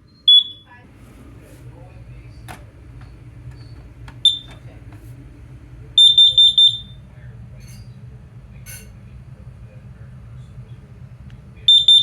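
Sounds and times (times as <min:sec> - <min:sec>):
smoke alarm click: 0:00.2 - 0:00.7, 0:04.2 - 0:04.6, 0:11.7 - 0:12.0
smoke alarm high beeps: 0:00.2 - 0:00.7, 0:04.2 - 0:04.6, 0:06.0 - 0:07.0, 0:11.7 - 0:12.0.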